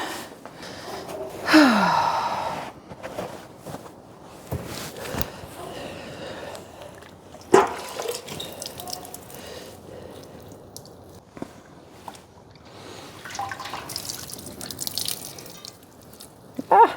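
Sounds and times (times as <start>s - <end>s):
liquid dripping and splashing: 7.0s - 11.2s, 13.1s - 16.7s.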